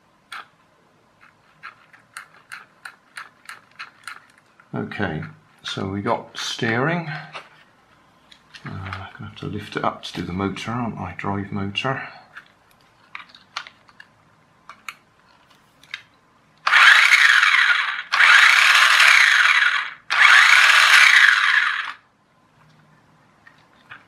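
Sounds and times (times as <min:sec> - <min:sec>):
small electric motor whirring: 0:16.7 - 0:22.0.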